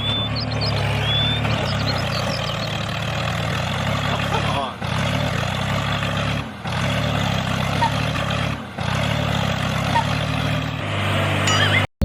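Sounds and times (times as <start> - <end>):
small tractor motor running: 0.0 - 11.9.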